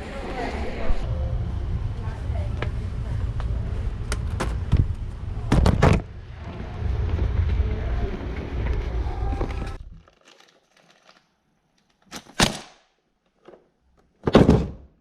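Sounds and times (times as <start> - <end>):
low rumble: 0.1 - 10.0.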